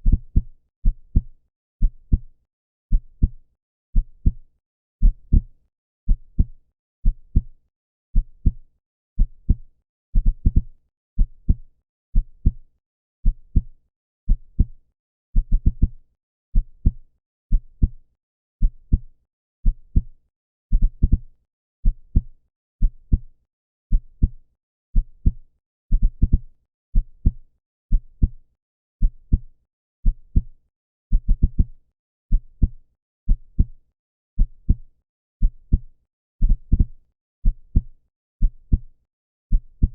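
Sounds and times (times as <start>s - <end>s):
heartbeat thumps: 26.0s - 26.4s.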